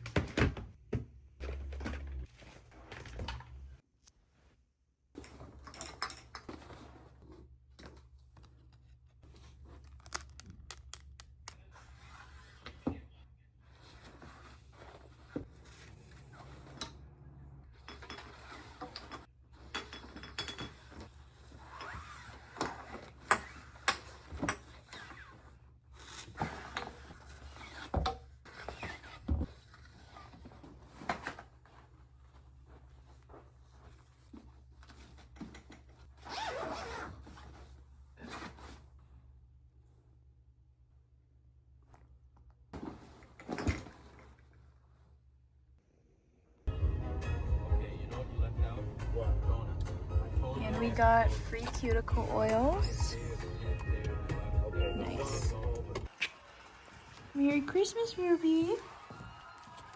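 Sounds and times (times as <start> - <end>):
objects knocking and clinking: 17.8 - 21.0.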